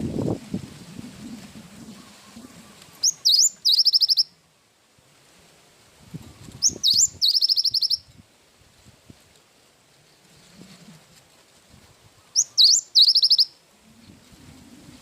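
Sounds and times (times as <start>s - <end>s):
bird singing whistled notes: 3.0s - 4.3s, 6.6s - 8.1s, 12.3s - 13.6s.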